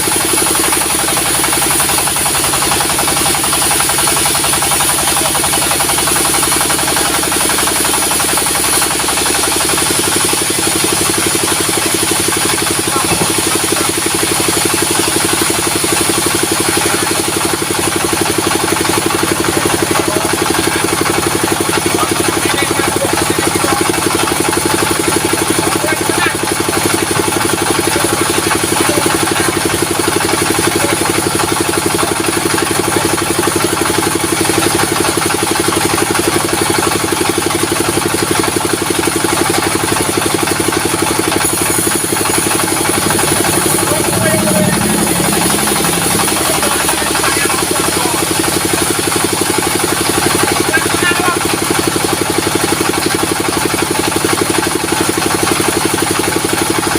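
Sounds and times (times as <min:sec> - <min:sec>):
high mechanical whine: 0:00.0 - 0:21.0, 0:40.5 - 0:50.2
machinery engine drone: 0:00.0 - 0:35.8, 0:36.4 - 0:53.5.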